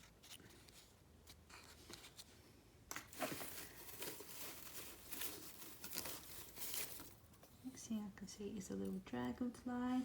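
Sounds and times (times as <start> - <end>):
packaging crinkling: 3.1 - 7.3.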